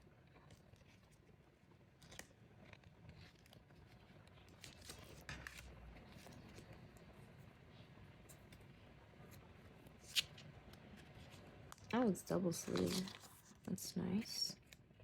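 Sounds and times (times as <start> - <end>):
plastic packaging rustling: 10.0 - 13.7.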